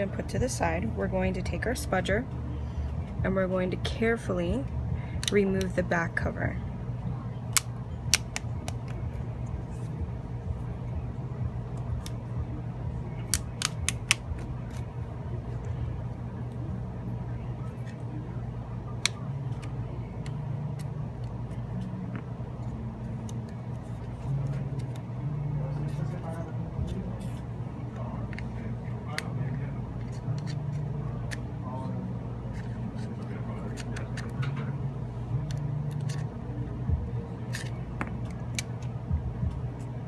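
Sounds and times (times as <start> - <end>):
steady low hum: 0.0 - 40.0
plastic clips snapping: 7.5 - 9.1, 11.8 - 12.2, 13.2 - 14.9, 19.0 - 21.4, 37.5 - 38.9.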